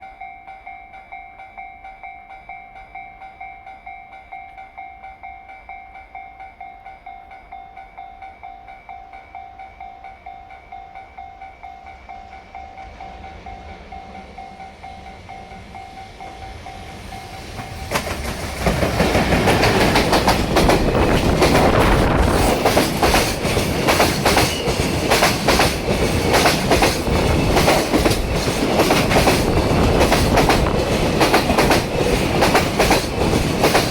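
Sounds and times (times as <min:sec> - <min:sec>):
train wheels clacking on rail joints: 0:12.8 - 0:33.9.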